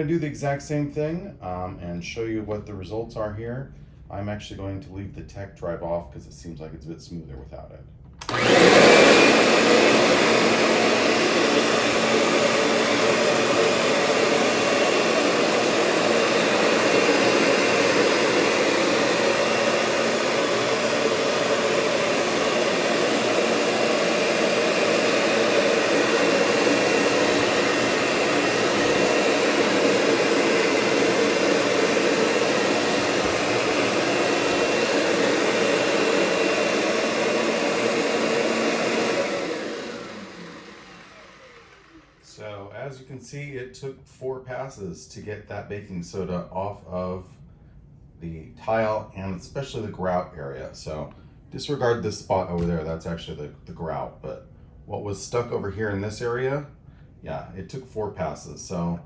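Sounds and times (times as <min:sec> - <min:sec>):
vacuum cleaner whining: 0:08.2 - 0:43.0.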